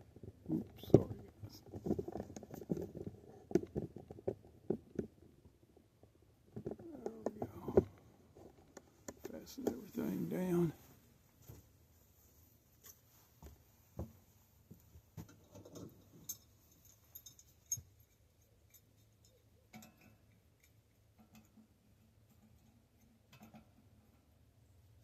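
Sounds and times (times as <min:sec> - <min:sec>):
tools clicking on metal bicycle parts: 0:15.3 - 0:21.6.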